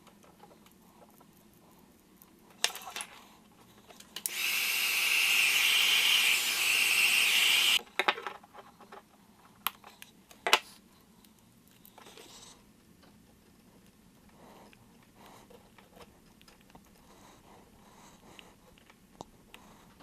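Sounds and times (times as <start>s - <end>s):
power tool running: 4.3s - 7.8s.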